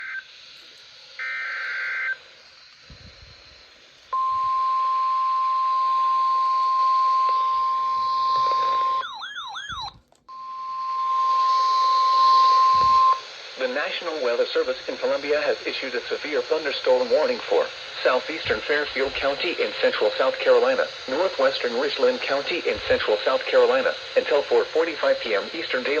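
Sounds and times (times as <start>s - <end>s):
radio hiss: 0.0s - 9.0s, 10.5s - 26.0s
harsh digital data buzz: 0.0s - 9.8s
warning alarm tone: 4.2s - 13.2s.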